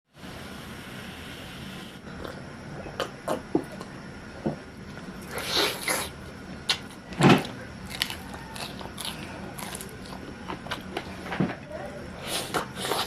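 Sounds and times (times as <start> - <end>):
chewing crunchy chicken: 4.8 - 11.3, 12.2 - 13.0.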